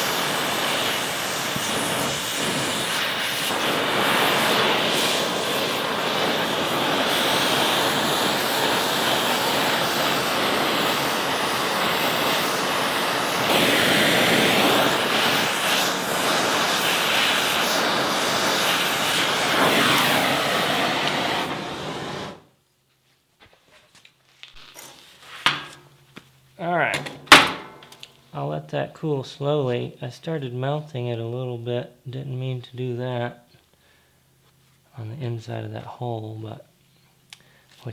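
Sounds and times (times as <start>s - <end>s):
torch flame rushing: 0.0s - 22.6s.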